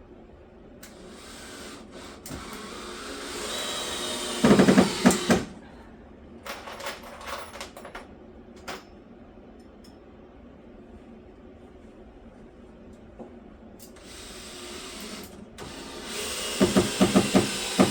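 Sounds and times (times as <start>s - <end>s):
handheld power tool running: 1.2s - 5.5s, 14.1s - 17.9s.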